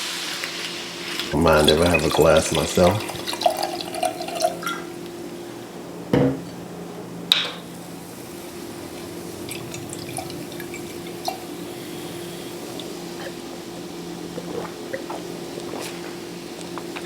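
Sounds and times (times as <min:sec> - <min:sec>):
steady low hum: 0:01.2 - 0:17.0
wine pouring into a glass: 0:01.3 - 0:04.9, 0:08.2 - 0:13.1.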